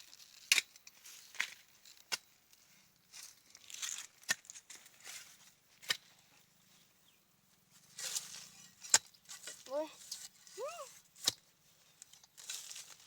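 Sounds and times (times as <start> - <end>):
scraping and rustling of earth: 0.0 - 13.0
digging tool striking soil: 8.0 - 10.3, 11.2 - 11.5.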